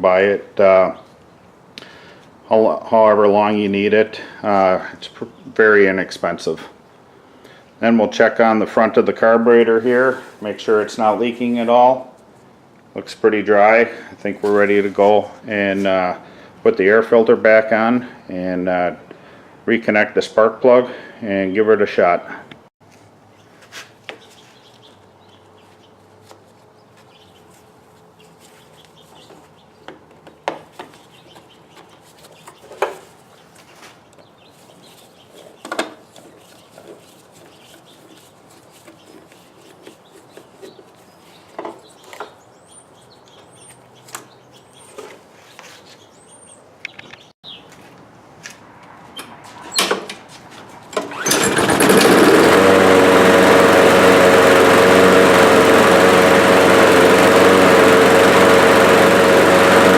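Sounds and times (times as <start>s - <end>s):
knocks and clicks of parts handled: 41.5s - 42.4s
lawn mower engine running: 50.9s - 59.9s.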